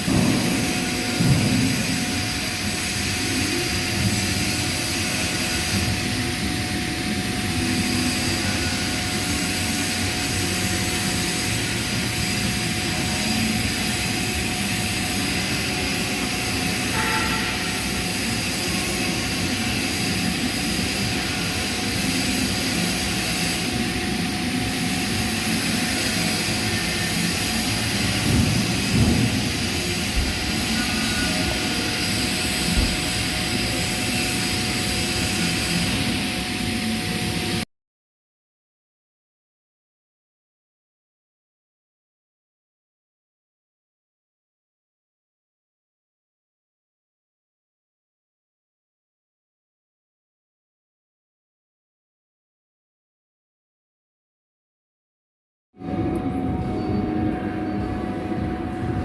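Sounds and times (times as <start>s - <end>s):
welding arc hiss and crackle: 0.0s - 37.6s.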